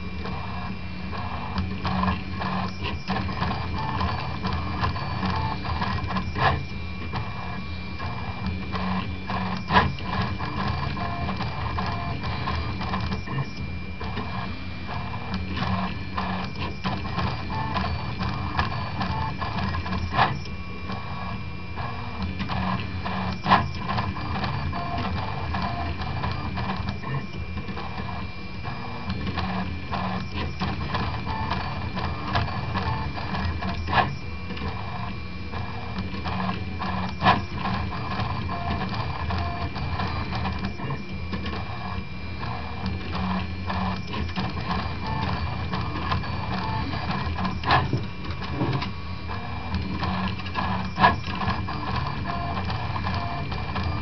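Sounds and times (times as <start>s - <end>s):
stepper motors buzzing and whirring: 0.0s - 54.0s.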